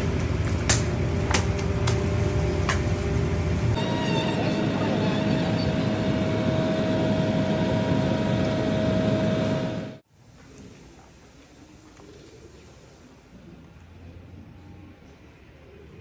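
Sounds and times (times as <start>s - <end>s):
farm machinery running: 0.0s - 10.0s
machine with steady whine: 0.0s - 10.0s.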